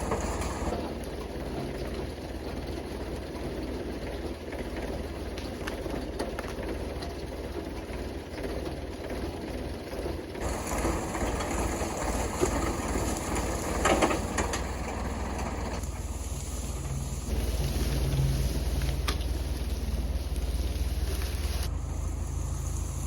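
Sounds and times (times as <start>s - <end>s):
engine running: 0.0s - 23.0s
clanks and knocks: 10.4s - 15.8s.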